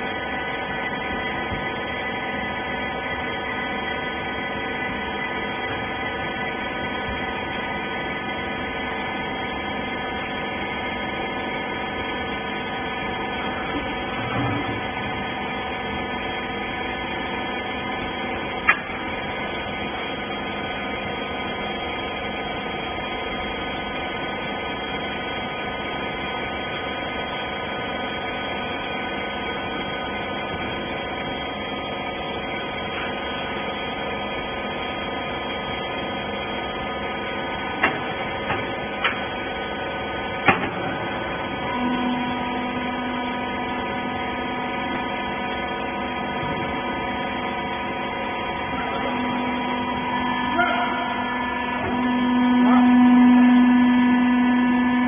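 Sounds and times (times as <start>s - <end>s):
hydraulic machine hum: 0.0s - 55.0s
steady tone: 48.1s - 55.0s.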